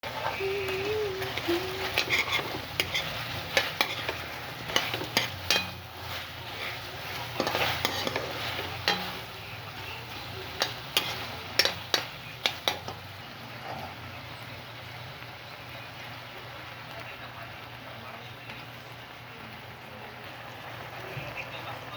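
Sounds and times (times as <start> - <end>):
utensil scraping a pan: 0.0 - 13.0
food sizzling: 0.0 - 21.9.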